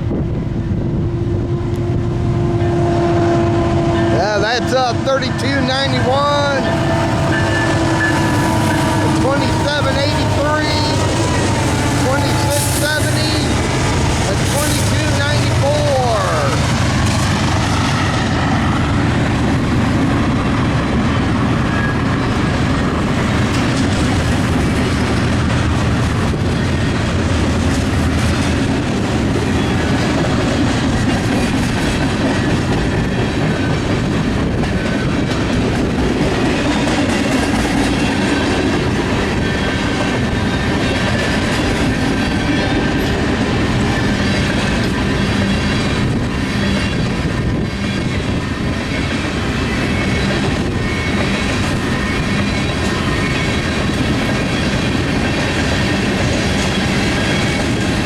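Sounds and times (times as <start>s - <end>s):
train wheels clacking over rail joints: 5.3s - 58.0s
high wheel squeal: 5.4s - 16.6s, 43.8s - 58.0s.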